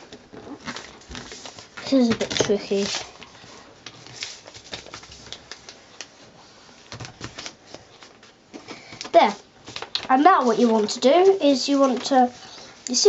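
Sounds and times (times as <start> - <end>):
paper being folded and creased: 0.0 - 6.2, 6.9 - 8.3, 9.0 - 13.0.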